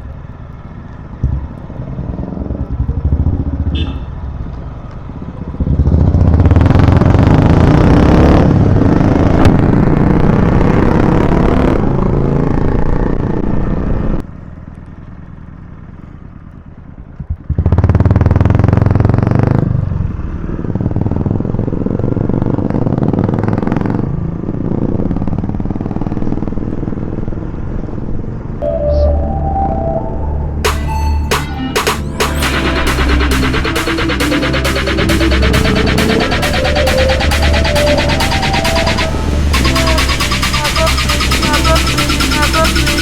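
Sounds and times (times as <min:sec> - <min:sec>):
loud rushing noise: 0:28.6 - 0:43.0.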